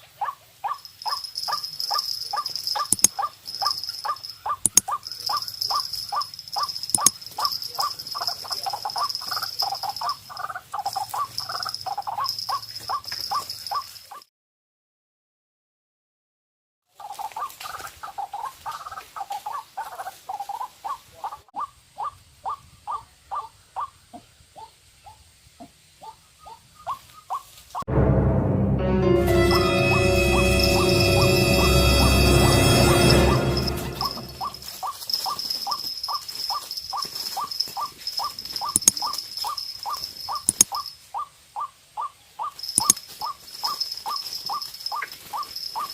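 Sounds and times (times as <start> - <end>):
waterhen calling: 0.0 - 13.9, 17.0 - 27.5, 34.4 - 45.9
sharp clicks: 1.0 - 3.8, 4.6 - 5.9, 6.6 - 8.2, 38.6 - 39.4, 40.0 - 40.9, 42.7 - 43.0.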